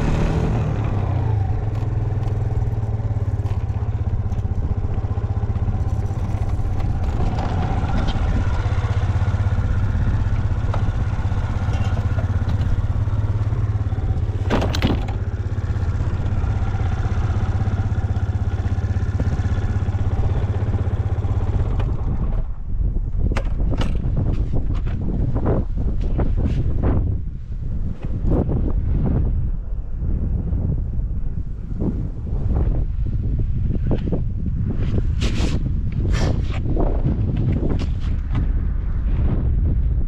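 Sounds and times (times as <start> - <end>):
scooter engine idling: 0.0 - 22.3.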